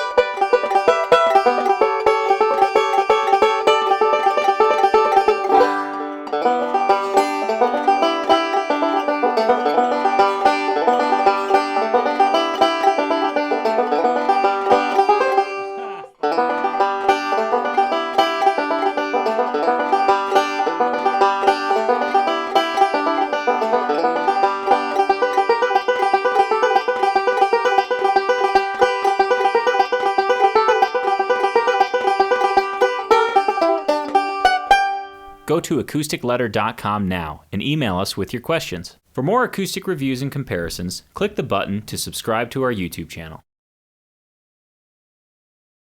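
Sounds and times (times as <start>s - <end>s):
banjo fast picked notes: 0.0s - 36.0s.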